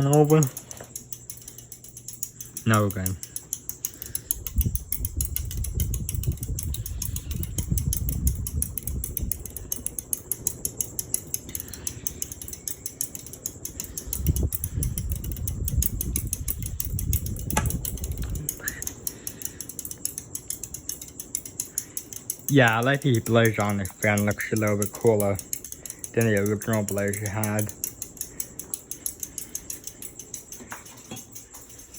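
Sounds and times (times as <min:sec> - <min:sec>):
ceiling fan ticking: 0:00.0 - 0:31.9
sharp click: 0:00.0 - 0:31.9.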